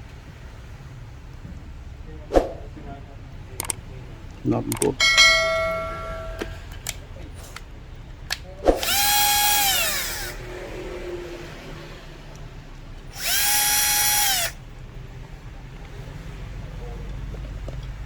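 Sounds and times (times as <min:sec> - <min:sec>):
handheld power tool whining: 0:08.8 - 0:11.0, 0:13.1 - 0:14.6.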